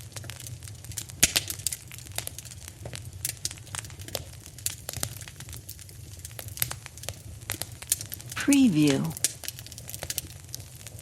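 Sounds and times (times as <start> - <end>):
fire crackling and roaring: 0.1 - 8.2.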